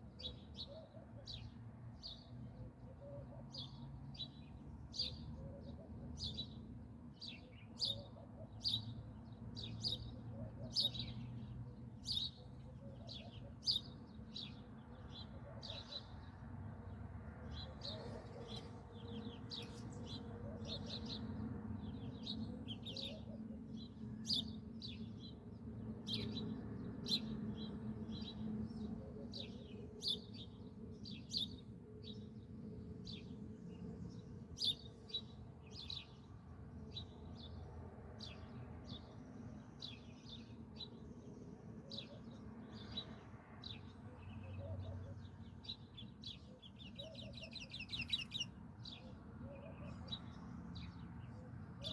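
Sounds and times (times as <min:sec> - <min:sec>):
small birds chirping: 0:38.2 - 0:51.9.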